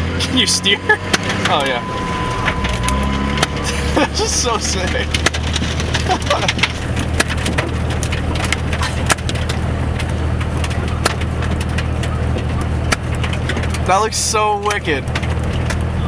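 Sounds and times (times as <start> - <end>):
firework crackling: 0.0 - 11.8
vehicle engine running: 0.0 - 16.0.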